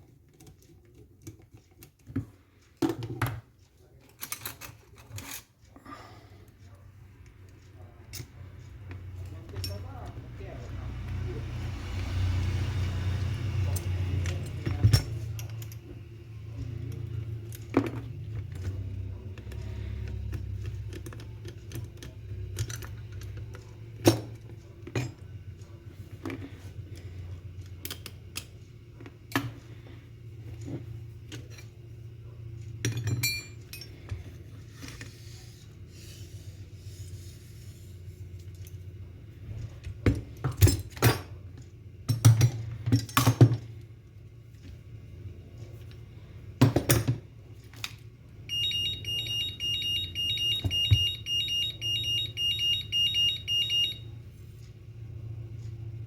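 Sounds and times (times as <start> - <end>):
steady low hum: 0.0 - 56.0
metal parts clinking: 4.0 - 5.7, 32.8 - 34.2.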